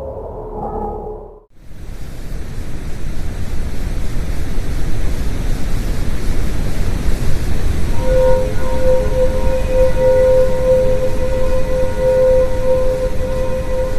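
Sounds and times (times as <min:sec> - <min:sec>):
dense low noise: 0:00.0 - 0:01.5
steady pitched hum: 0:00.0 - 0:01.5, 0:07.3 - 0:13.9.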